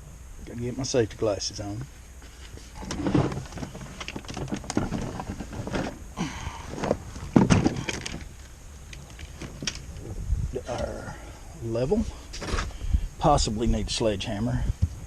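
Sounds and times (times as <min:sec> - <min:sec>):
rustling: 0:01.8 - 0:10.2.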